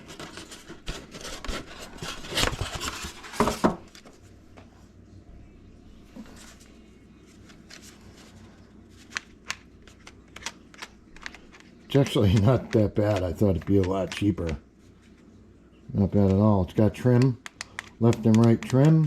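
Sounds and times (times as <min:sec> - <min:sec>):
packaging rustling and scraping: 0:00.0 - 0:04.2.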